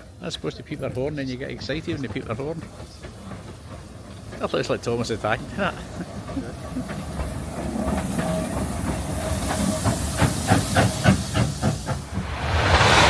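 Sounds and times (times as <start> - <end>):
steam locomotive hissing: 0.0 - 13.0
quick locomotive beats: 6.9 - 13.0.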